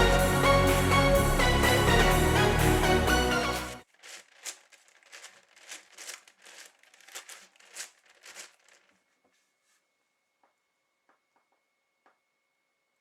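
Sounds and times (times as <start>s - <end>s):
music: 0.0s - 3.8s
plastic puzzle cube clicking: 4.0s - 8.8s.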